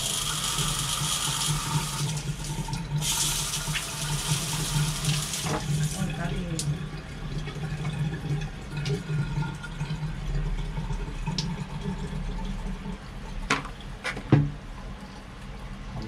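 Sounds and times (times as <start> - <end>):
water running from shower faucet: 0.0 - 13.4.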